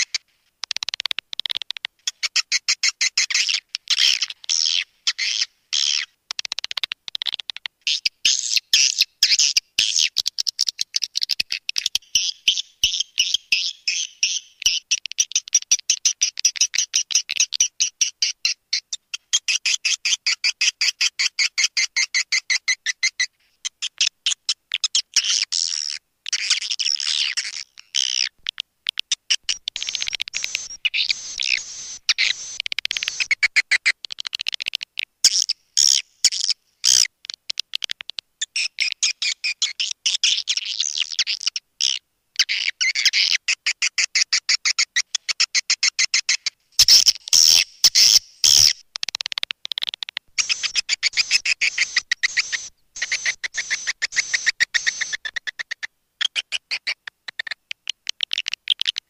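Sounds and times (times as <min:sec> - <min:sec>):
sharp clicks: 0:00.0 - 0:02.0, 0:06.3 - 0:07.7, 0:28.4 - 0:35.1, 0:37.2 - 0:39.0, 0:46.8 - 0:55.4
high-pitched twittering chirps: 0:29.4 - 0:34.2, 0:46.8 - 0:55.9.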